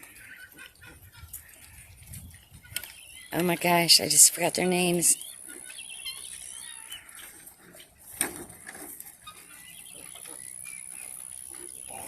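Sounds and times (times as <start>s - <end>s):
pigs grunting softly: 11.5s - 12.0s.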